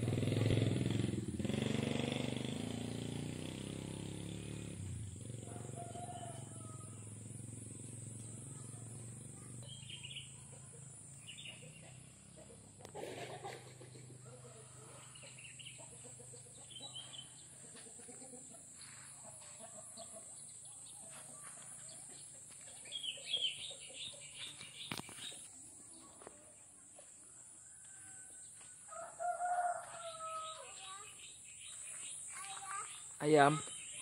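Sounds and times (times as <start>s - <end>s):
rooster crowing: 5.4s - 7.3s, 27.6s - 31.0s
bird chirps: 7.8s - 12.1s, 15.1s - 17.7s, 19.2s - 26.1s, 30.0s - 34.0s.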